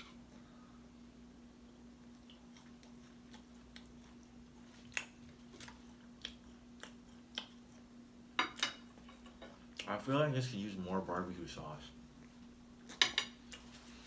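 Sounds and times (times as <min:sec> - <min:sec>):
faint steady hum: 0:00.0 - 0:14.0
mouth clicks and smacks chewing: 0:02.1 - 0:07.9.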